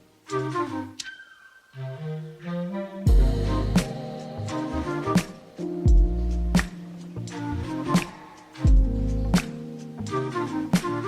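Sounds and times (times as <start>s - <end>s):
background music with steady beat: 3.0s - 11.0s.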